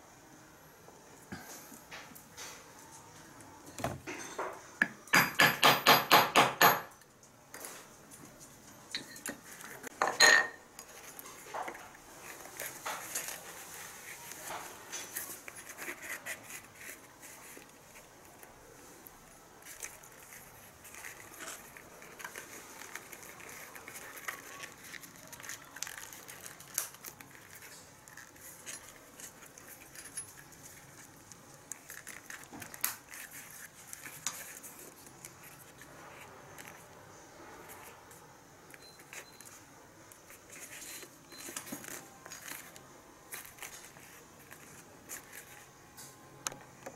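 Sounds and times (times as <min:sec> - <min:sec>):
small objects clicking and rustling: 0:10.8 - 0:46.9.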